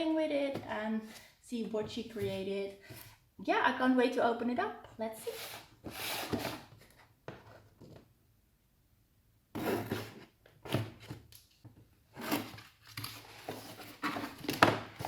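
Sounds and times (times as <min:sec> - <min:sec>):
cardboard scraping and rustling: 0:05.3 - 0:07.7, 0:09.6 - 0:11.2, 0:12.1 - 0:15.0.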